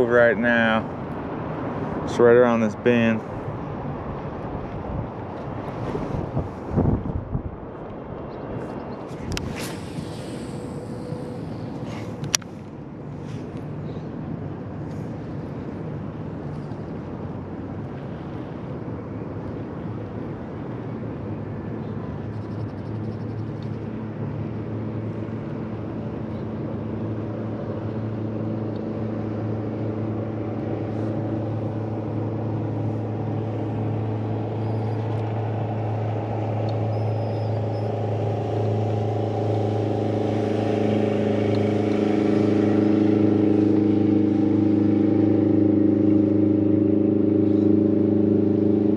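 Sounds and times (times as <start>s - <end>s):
boat motor running: 27.9s - 48.9s.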